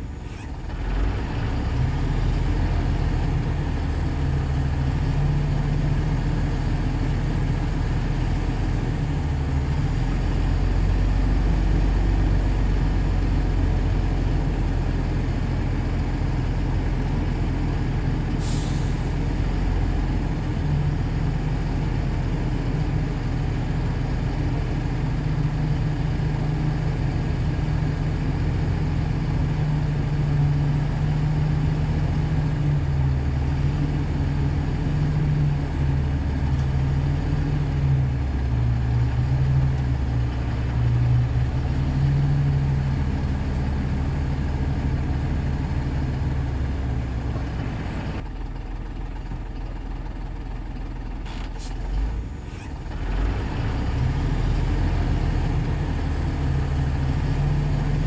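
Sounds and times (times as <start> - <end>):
bulldozer diesel engine running: 0.0 - 58.0
brief high hiss: 51.3 - 51.8.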